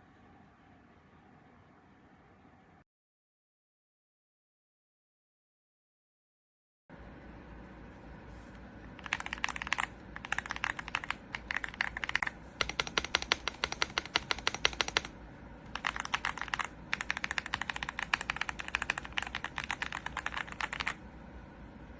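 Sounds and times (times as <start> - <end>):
mechanical keyboard typing: 9.0 - 21.0.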